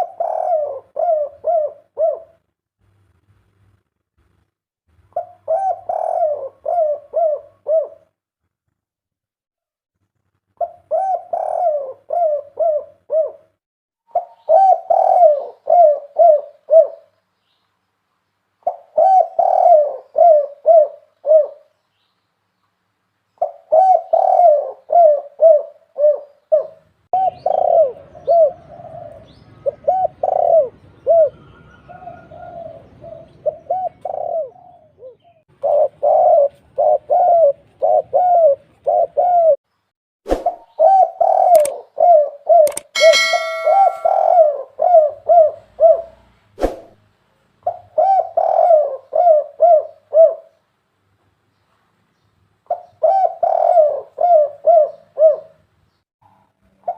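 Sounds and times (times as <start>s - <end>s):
doves cooing: 0.0s - 2.4s, 5.2s - 8.1s, 10.6s - 13.5s, 14.1s - 17.1s, 18.6s - 21.7s, 23.4s - 39.6s, 40.6s - 42.7s, 47.6s - 50.6s, 52.7s - 55.6s
sharp clicks: 41.5s - 41.7s, 42.6s - 43.2s
short ringing tone: 43.0s - 44.6s.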